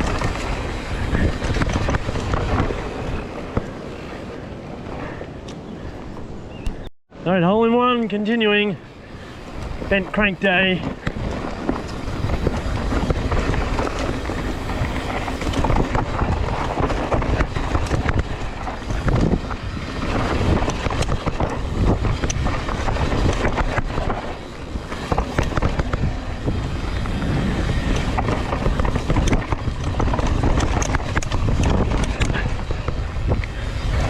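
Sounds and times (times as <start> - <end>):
bike knocks and rattles: 0.0 - 4.2, 9.2 - 34.0
bike tyres on dirt: 0.0 - 34.0
wind rumbling on the microphone: 0.0 - 34.0.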